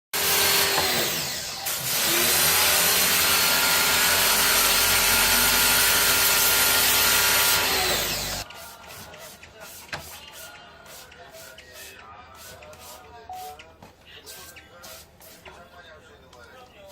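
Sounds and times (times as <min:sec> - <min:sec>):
machine motor hissing and humming: 0:00.2 - 0:08.5.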